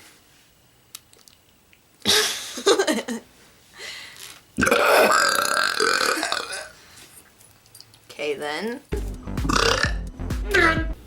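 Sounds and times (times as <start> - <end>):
person belching: 4.6 - 6.7, 9.4 - 11.0.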